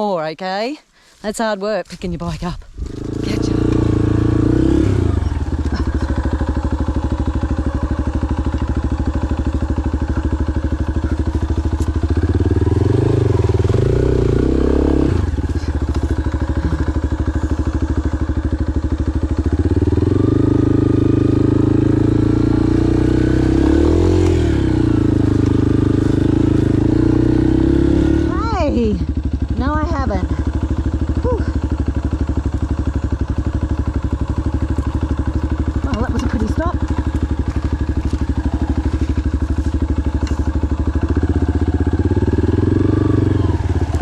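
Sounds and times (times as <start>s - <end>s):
motorcycle engine revving: 2.8s - 44.0s.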